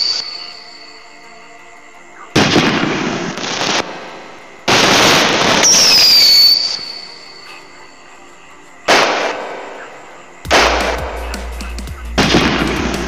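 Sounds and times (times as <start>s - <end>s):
firework bang and crackle: 12.2s - 13.0s.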